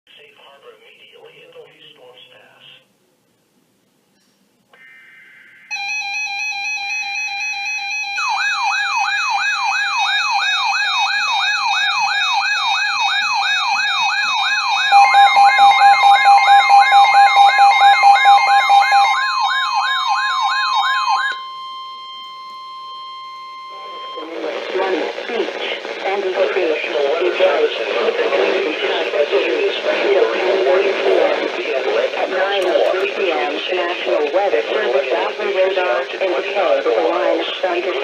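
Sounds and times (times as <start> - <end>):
siren-like alarm sweeping: 4.8 - 24.4
steady alert tone: 13.9 - 19.4.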